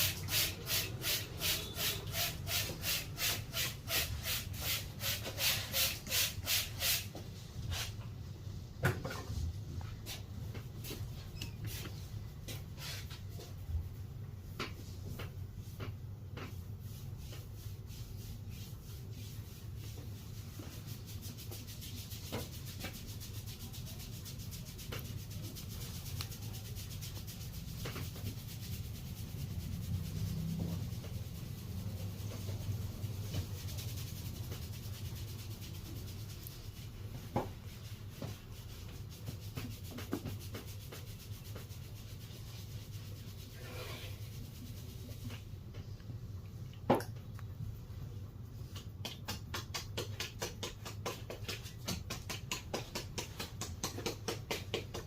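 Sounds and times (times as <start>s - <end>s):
hands rubbing scalp and hair: 14.6s - 46.0s, 48.3s - 55.0s
quick taps and clicks: 48.7s - 55.0s.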